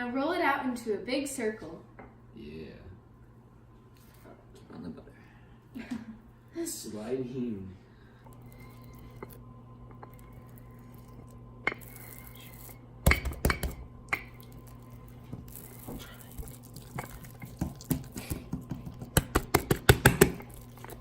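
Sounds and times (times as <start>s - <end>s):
steady low hum: 0.0s - 21.0s
rolling pin knocking on counter: 13.0s - 13.9s, 17.6s - 20.4s.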